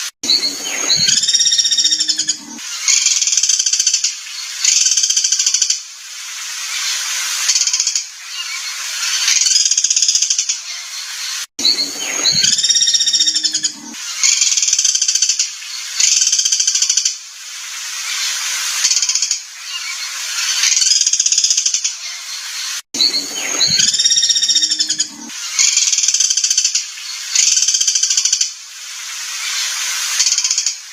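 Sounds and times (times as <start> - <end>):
lower throaty bird calls: 0.0 - 3.6, 8.2 - 16.8, 19.5 - 28.1
songbird buzzy chattering trills: 0.2 - 5.8, 11.6 - 17.0, 18.9 - 28.5.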